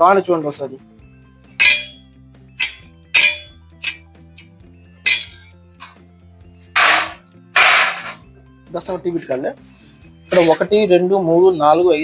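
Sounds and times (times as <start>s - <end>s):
sharp metal clanks: 1.6s - 4.1s, 5.1s - 6.0s, 6.8s - 8.2s.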